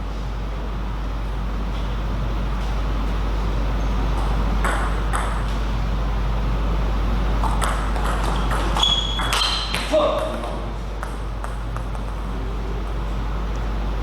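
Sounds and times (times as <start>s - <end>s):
steady low hum: 0.0s - 14.0s
table tennis ball hits: 4.1s - 5.7s, 7.4s - 13.0s.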